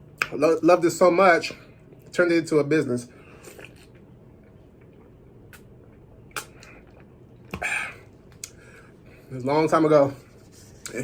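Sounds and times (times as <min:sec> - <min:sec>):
sharp mouth clicks: 0:06.3 - 0:07.7.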